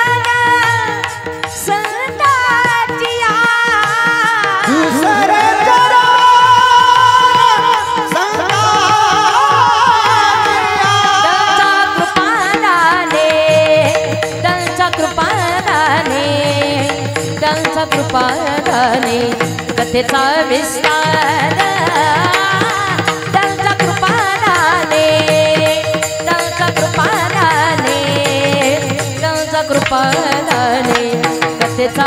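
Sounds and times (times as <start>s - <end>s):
hand drum rhythm: 0.0s - 32.0s
person singing ornamented melody: 4.4s - 19.4s.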